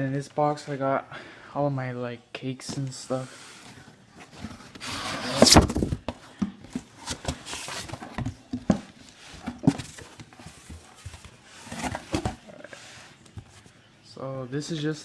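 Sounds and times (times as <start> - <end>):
cardboard box rustling: 4.2 - 13.6
knocks and rustles of contents: 4.2 - 13.7.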